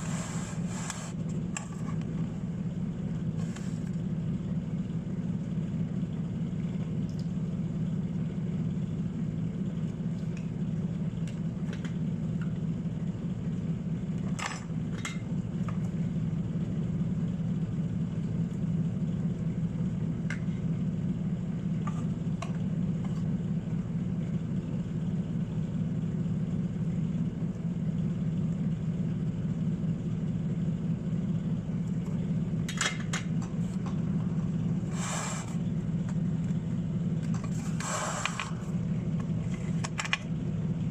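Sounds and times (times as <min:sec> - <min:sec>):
electric motor humming: 0:33.8 - 0:35.8, 0:37.3 - 0:39.0.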